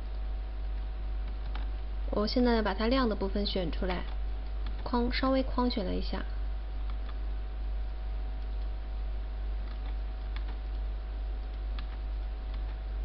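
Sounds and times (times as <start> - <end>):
low electrical hum: 0.0 - 13.0
faint sharp computer clicks: 9.6 - 10.8, 11.4 - 12.8.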